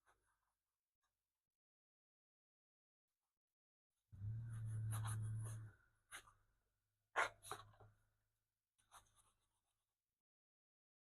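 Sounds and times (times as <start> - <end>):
low hum: 4.2 - 5.8.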